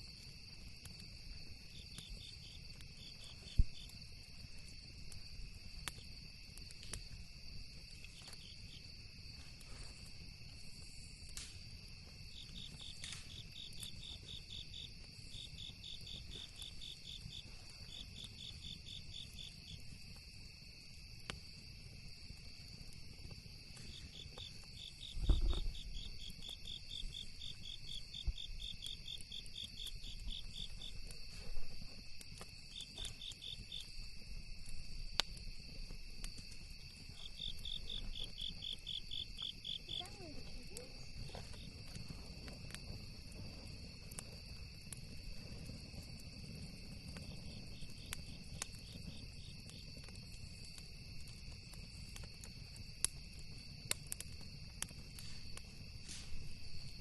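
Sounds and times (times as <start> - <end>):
campfire crackle: 0.0 - 57.0
crickets chirping: 0.0 - 57.0
dull low thump: 25.2 - 25.8.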